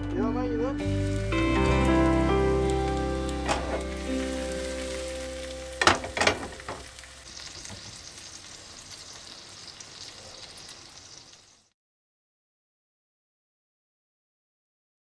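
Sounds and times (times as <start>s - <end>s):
background music: 0.0s - 7.2s
food sizzling in frying pan: 0.8s - 11.7s.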